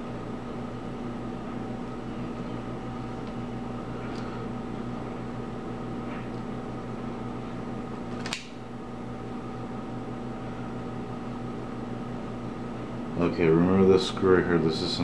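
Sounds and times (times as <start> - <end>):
mechanical hum: 0.0 - 15.0
sharp click: 8.1 - 8.6.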